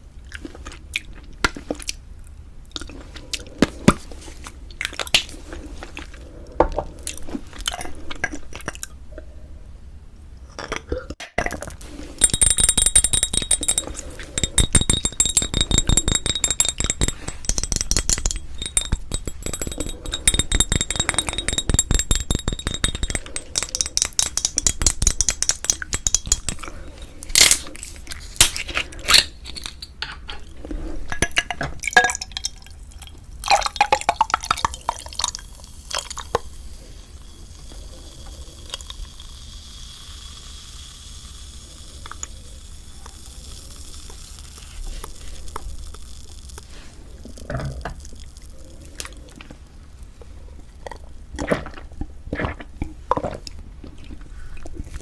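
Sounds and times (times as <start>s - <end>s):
utensils clicking against dishes: 12.2s - 27.7s.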